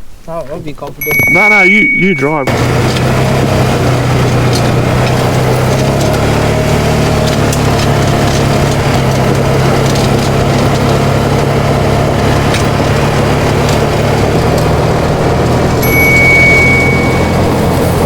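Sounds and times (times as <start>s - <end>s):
high steady tone: 1.0s - 2.8s, 15.8s - 18.0s
vehicle engine running: 1.1s - 18.0s
cracks and knocks: 2.8s - 15.8s.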